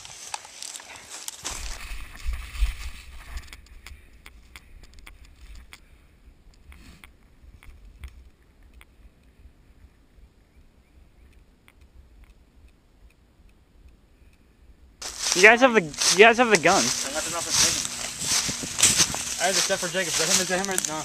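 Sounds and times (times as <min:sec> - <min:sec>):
faint clicks and snaps: 0:06.5 - 0:09.4, 0:11.3 - 0:14.4
low microphone rumble: 0:16.8 - 0:21.0.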